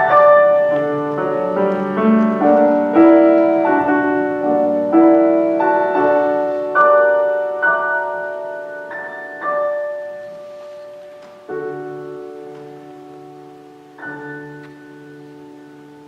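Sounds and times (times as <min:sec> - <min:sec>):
piano chords: 0:00.0 - 0:16.0.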